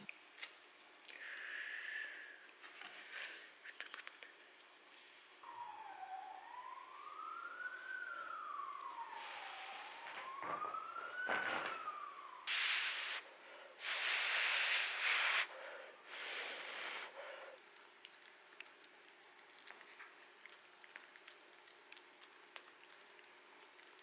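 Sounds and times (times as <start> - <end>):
siren wailing: 5.4 - 13.4.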